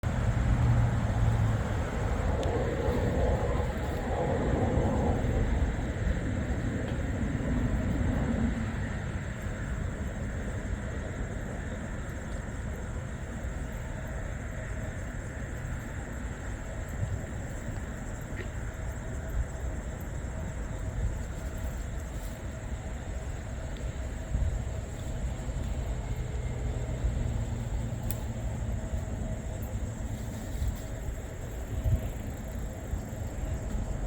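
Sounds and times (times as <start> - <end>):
vehicle passing by: 0.0 - 5.6
motor traffic rumbling: 0.0 - 10.2, 22.1 - 34.0.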